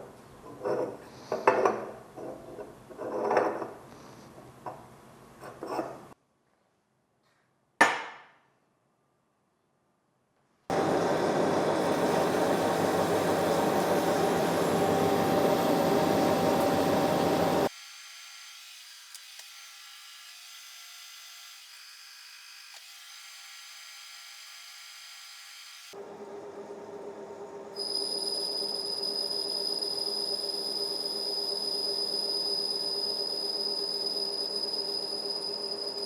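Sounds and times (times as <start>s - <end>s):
machine cutting steel: 10.7s - 17.7s.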